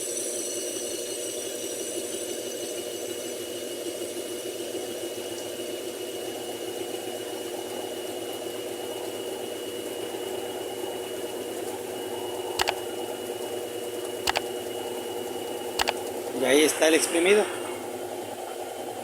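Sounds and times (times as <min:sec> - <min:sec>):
sharp clicks: 0:12.6 - 0:13.0, 0:14.3 - 0:14.8, 0:15.8 - 0:16.2.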